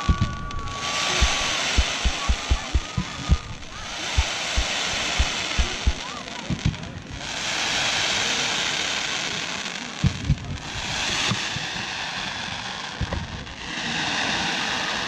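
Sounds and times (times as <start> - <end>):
firework booms: 0.0 - 6.8
firework crackling hiss: 0.0 - 15.0.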